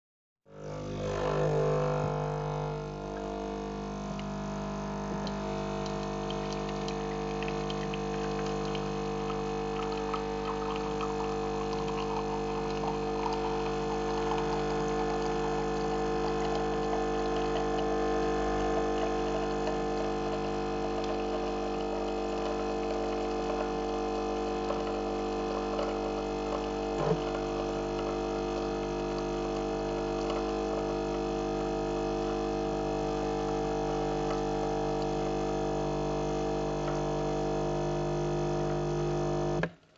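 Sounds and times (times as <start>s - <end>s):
coffee machine pump humming: 0.5s - 39.7s
coffee trickling into cup: 5.2s - 32.6s.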